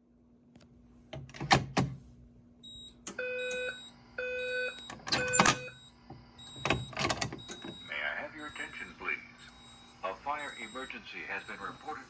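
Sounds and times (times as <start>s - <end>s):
evacuation alarm tones: 2.6s - 12.0s.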